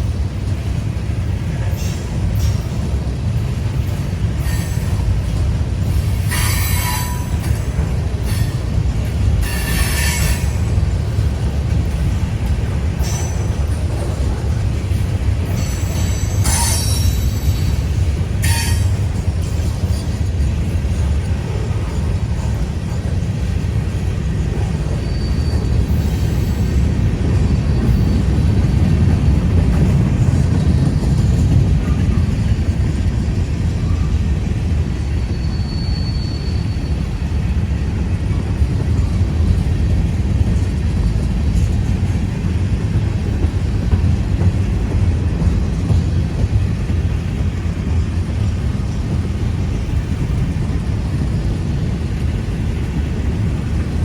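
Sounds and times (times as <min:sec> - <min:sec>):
freight train rumbling past: 0:00.0 - 0:54.0
high wheel squeal: 0:06.0 - 0:08.6, 0:09.4 - 0:10.7, 0:15.5 - 0:19.0, 0:24.8 - 0:27.0, 0:35.1 - 0:37.4.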